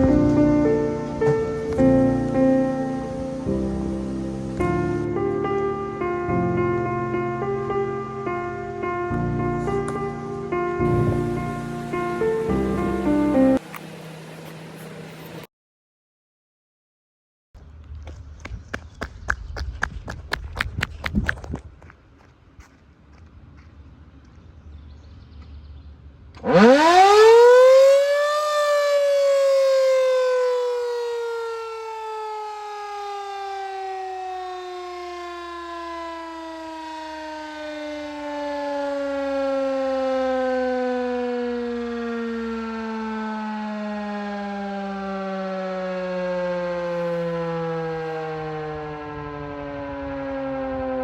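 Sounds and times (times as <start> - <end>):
civil defense siren winding: 0.0 - 15.5, 26.3 - 51.0.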